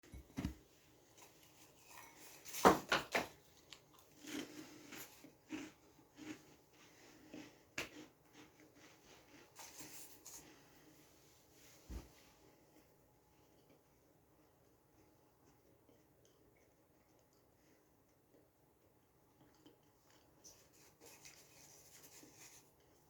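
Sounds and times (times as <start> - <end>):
soft taps and rustles: 0.1 - 0.6, 11.8 - 12.3.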